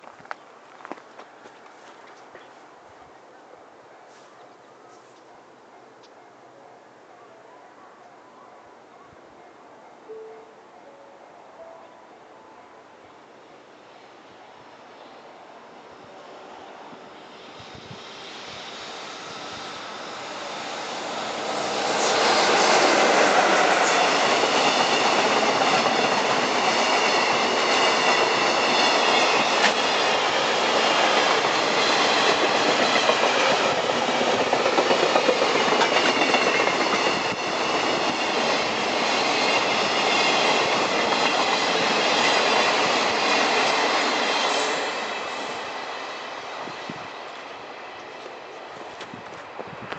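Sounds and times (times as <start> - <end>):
electric locomotive hauling freight train: 10.0 - 49.9.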